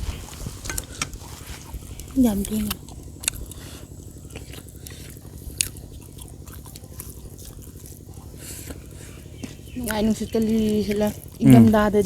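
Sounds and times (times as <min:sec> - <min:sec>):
steady low hum: 0:00.0 - 0:12.0
person chewing food: 0:00.8 - 0:10.0.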